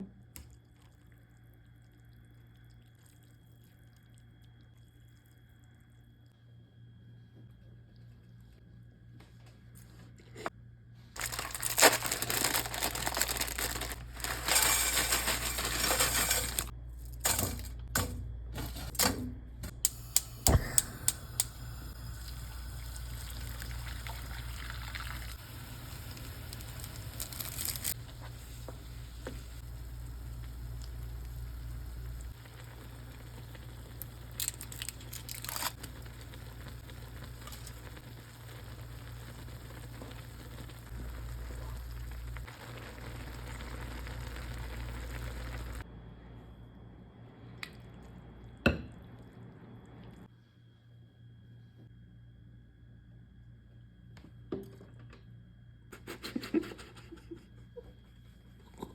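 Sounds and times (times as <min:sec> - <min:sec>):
plastic packaging crinkling: 0:11.2 - 0:16.7, 0:26.5 - 0:28.0, 0:34.3 - 0:36.0.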